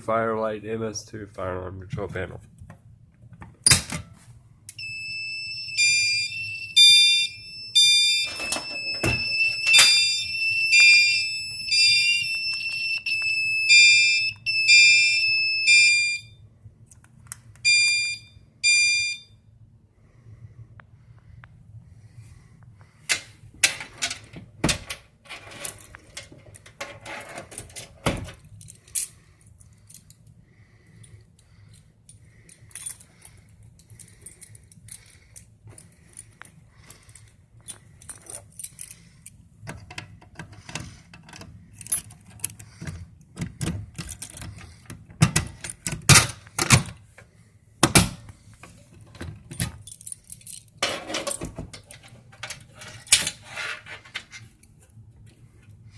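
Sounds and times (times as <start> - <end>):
keys jangling: 27.5 - 30.2, 31.7 - 39.4, 41.3 - 42.9, 43.9 - 46.0, 49.4 - 53.4.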